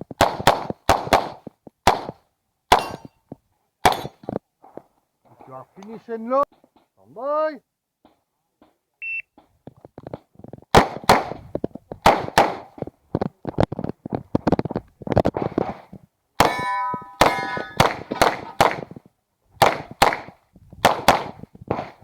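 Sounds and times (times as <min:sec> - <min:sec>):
pistol shots: 0:02.7 - 0:03.1, 0:16.4 - 0:18.9, 0:19.6 - 0:21.4
steel targets clanging: 0:02.8 - 0:03.2, 0:16.4 - 0:18.6.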